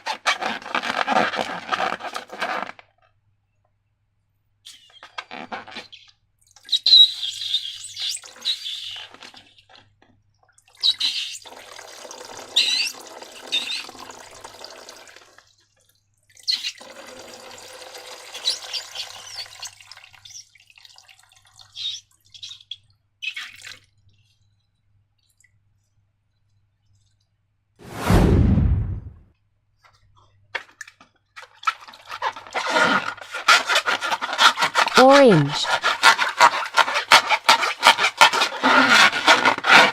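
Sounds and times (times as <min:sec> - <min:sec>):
wet slime worked by hand: 0:30.5 - 0:39.9.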